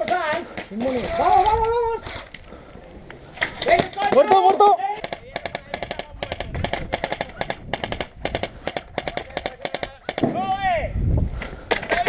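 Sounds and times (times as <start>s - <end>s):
airsoft guns firing bursts: 0.0s - 2.3s, 3.7s - 10.4s.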